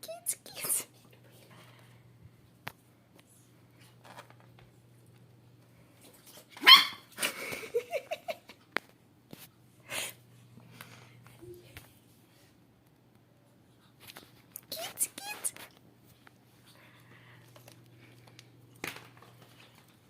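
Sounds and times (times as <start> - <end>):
small clicks and rustles: 2.6 - 6.5, 12.8 - 20.0
puppy barking: 6.6 - 7.1.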